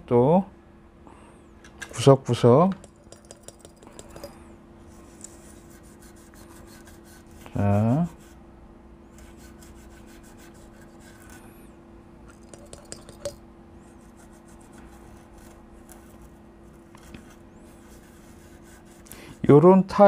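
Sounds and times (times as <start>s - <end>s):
steady low hum: 0.0s - 20.0s
faint scrubbing and scratching: 3.5s - 8.4s, 9.1s - 19.6s.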